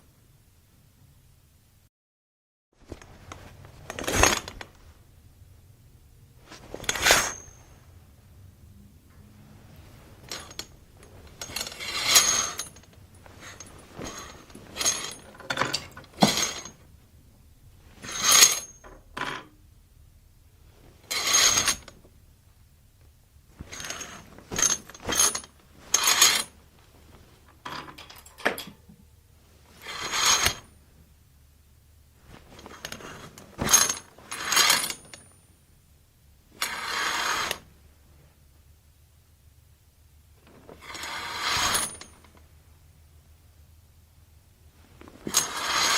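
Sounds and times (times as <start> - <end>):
curtain sliding swishes: 6.4 - 7.6, 11.1 - 16.8, 23.5 - 27.5, 29.6 - 30.6, 40.6 - 42.1, 44.9 - 45.9.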